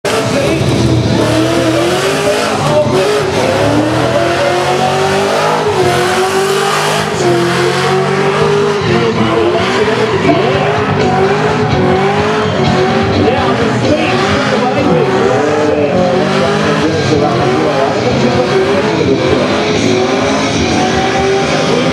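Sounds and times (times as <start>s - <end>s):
car engine revving high: 0.0s - 21.9s
tyres squealing: 0.3s - 20.1s.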